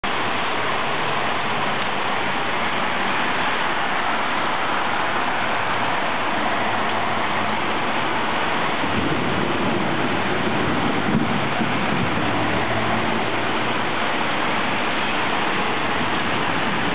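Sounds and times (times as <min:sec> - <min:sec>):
heavy rain pouring: 0:00.0 - 0:16.9.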